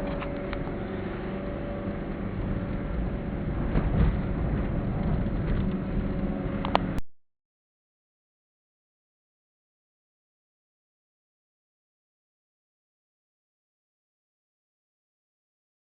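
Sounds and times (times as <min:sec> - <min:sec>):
car engine humming: 0:00.0 - 0:07.0
road noise: 0:00.0 - 0:07.0.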